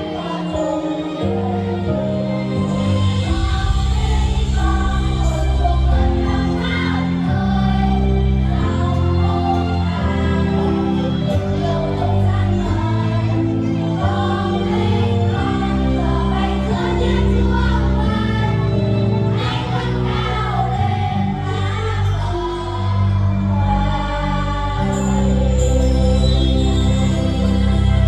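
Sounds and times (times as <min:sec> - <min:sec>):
steady bass: 0:02.6 - 0:25.0
group singing with instruments: 0:02.7 - 0:26.1.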